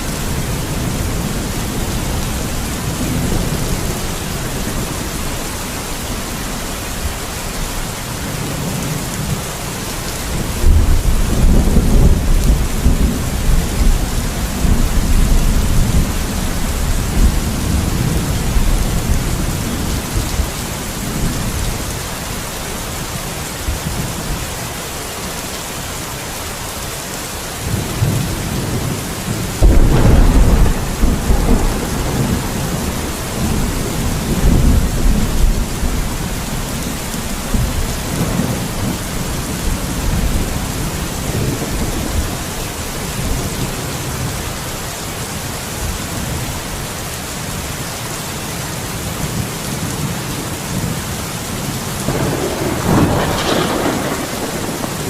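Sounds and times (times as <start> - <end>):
steady rain hissing: 0.0 - 55.0
rolling thunder: 10.3 - 21.8, 27.7 - 42.5, 52.0 - 55.0.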